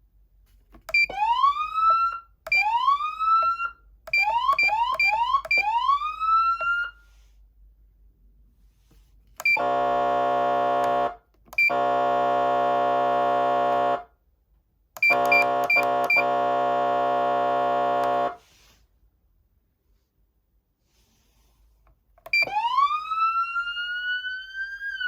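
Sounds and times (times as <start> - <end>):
electronic siren horn tone: 9.4 - 14.1, 15.0 - 18.4.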